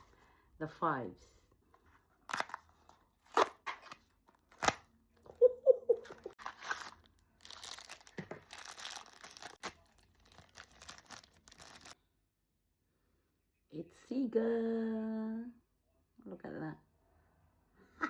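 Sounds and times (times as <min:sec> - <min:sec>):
wrapping tearing and crinkling: 0:06.3 - 0:12.0.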